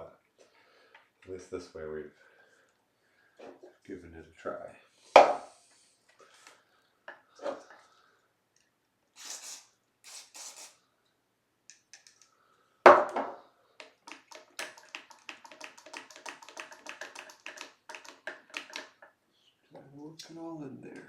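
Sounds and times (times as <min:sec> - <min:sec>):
spray can hisses: 0:09.2 - 0:10.8.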